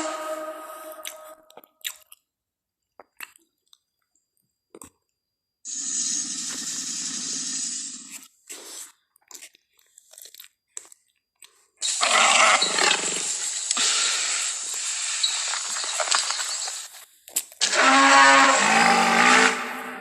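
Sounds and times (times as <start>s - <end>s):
harsh hissing creature call: 0.0s - 1.3s, 5.7s - 8.1s, 11.8s - 16.0s, 17.6s - 20.0s.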